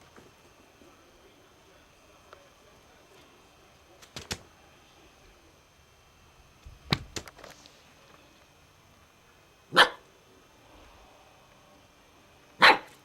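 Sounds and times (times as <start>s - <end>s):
light knocks: 6.9s - 7.5s
puppy barking: 9.7s - 10.0s, 12.6s - 13.0s.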